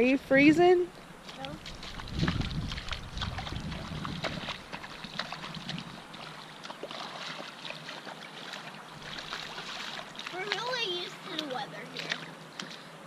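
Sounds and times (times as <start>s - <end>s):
wind rumble on microphone: 0.0s - 6.3s
rain drips and splashes: 0.9s - 12.9s.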